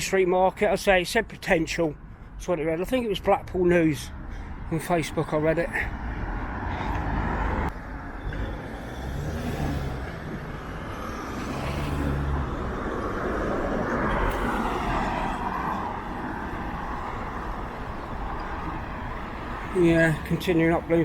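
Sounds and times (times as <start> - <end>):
tyre noise on road: 0.0 - 21.0
car engines passing: 3.6 - 21.0
vehicle passing by: 5.8 - 21.0.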